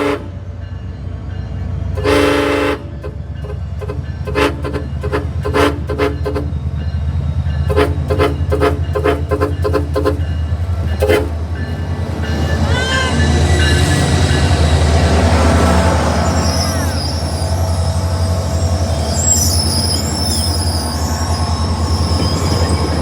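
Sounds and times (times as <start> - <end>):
train horn toots: 0.0 - 0.5, 1.9 - 6.5, 7.6 - 11.4
train engine rumbling: 0.0 - 23.0
wheel squeals: 16.0 - 23.0.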